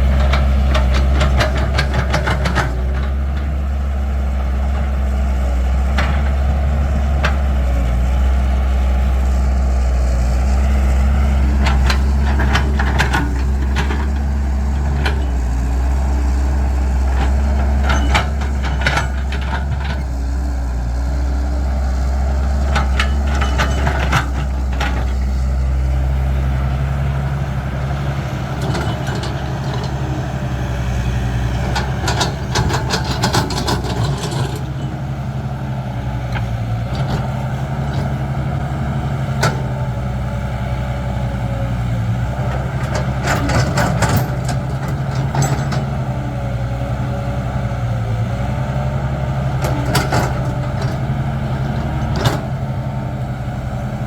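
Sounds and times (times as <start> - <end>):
excavator diesel engine running: 0.0 - 54.0
sharp metal clanks and knocks: 17.2 - 20.0, 22.7 - 25.2.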